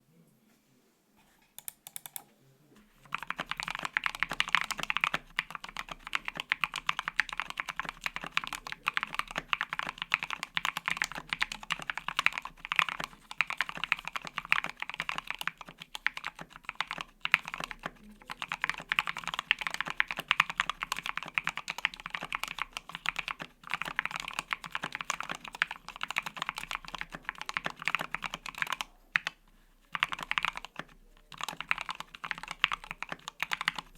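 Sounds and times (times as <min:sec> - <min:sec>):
typing on mechanical keyboard: 0:01.6 - 0:02.2, 0:03.0 - 0:33.9.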